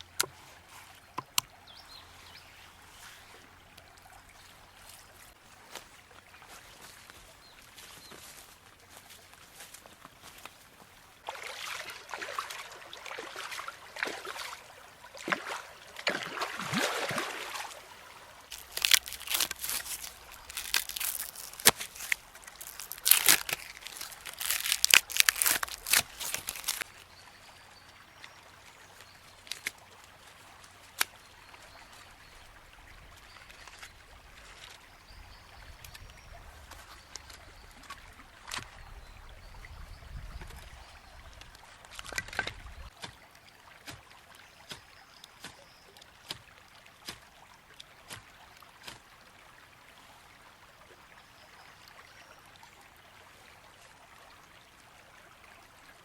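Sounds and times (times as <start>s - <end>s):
marinade trickling and sloshing: 0.0s - 56.0s
bark tearing and crackling: 18.5s - 26.9s, 29.4s - 29.7s.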